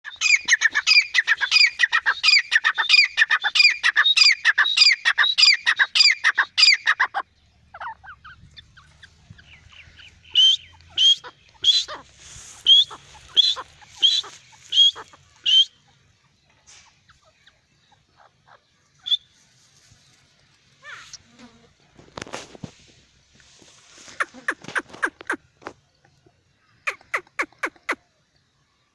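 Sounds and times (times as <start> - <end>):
francolin calling: 0.0 - 19.4.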